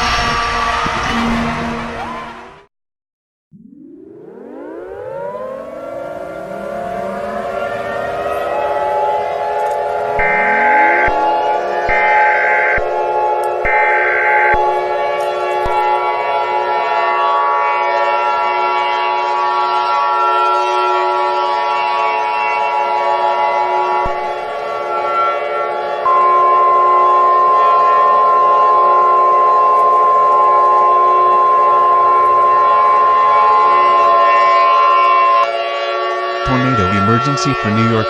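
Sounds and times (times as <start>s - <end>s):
civil defense siren: 0.0s - 2.7s, 3.5s - 38.0s
steady alert tone: 10.2s - 13.0s, 36.5s - 38.0s.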